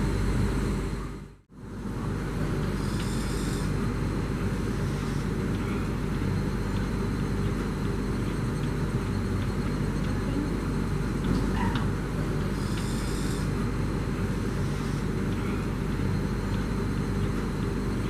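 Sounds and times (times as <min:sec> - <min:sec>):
low mechanical drone: 0:00.0 - 0:18.0.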